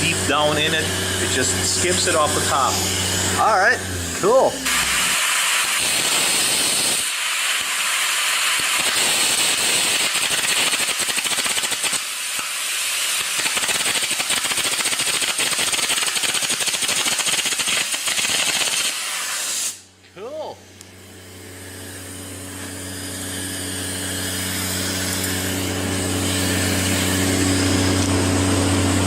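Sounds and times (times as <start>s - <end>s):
compressed air blast: 4.6s - 19.9s.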